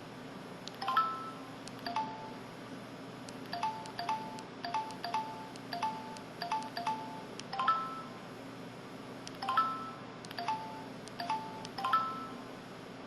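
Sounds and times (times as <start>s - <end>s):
mobile phone electronic chime: 3.6s - 8.2s, 9.4s - 12.4s.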